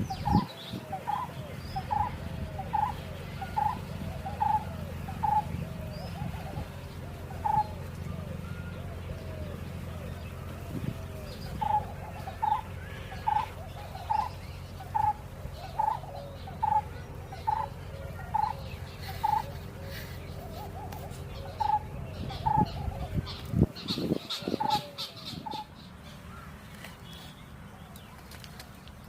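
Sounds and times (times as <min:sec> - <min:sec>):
low background rumble: 0:00.0 - 0:29.0
bird repeating short call: 0:11.3 - 0:26.5.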